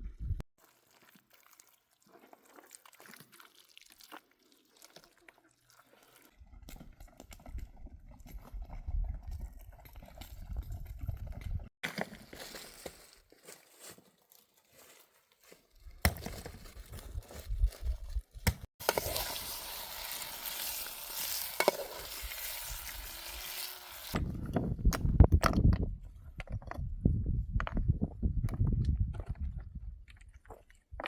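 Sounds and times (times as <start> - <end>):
food sizzling in a pan: 18.8 - 24.2.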